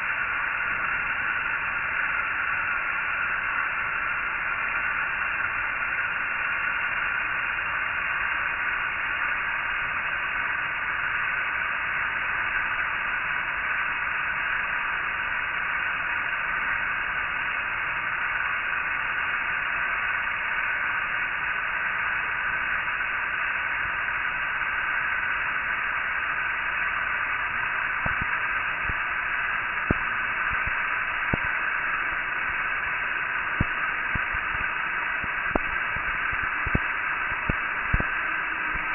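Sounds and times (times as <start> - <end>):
steady static hiss: 0.0 - 38.9
faint clicks: 28.0 - 29.0, 29.8 - 31.6, 33.6 - 38.9.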